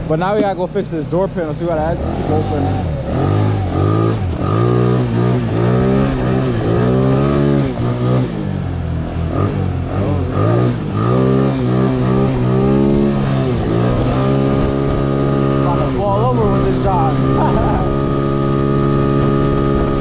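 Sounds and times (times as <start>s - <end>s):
scooter engine revving: 0.0s - 20.0s.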